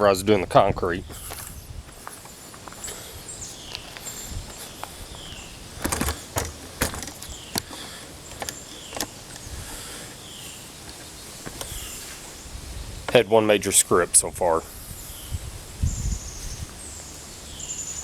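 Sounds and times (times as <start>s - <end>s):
bird chirping faintly: 1.0s - 13.2s
footsteps: 1.1s - 12.4s
knocks and clicks: 5.8s - 9.1s.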